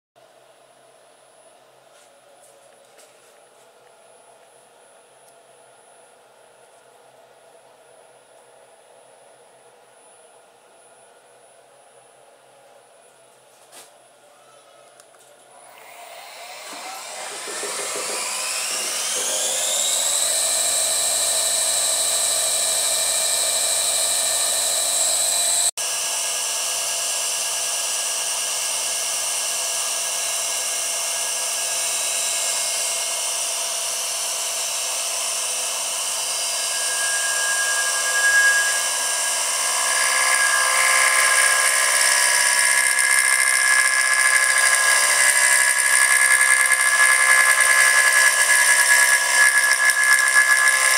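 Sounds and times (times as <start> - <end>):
milling machine spindle whine: 15.6 - 50.9.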